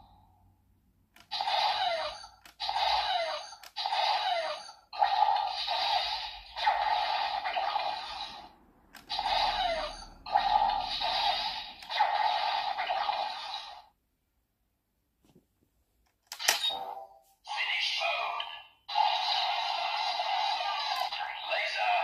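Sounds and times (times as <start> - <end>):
toy electronic sound effects: 1.2 - 13.9, 16.4 - 22.0
toy voice lines: 1.3 - 8.4, 9.0 - 12.0, 17.5 - 22.0.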